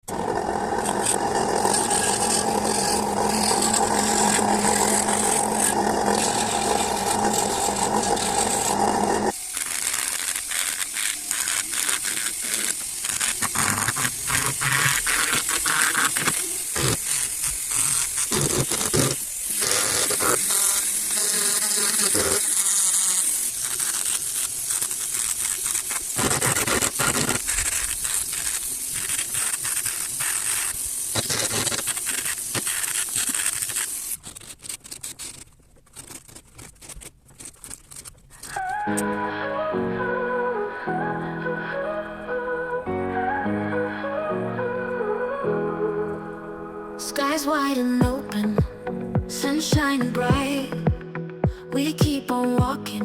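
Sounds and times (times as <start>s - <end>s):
electric tool motor hum: 0.0s - 34.5s
scraping and grinding wood: 0.0s - 38.7s.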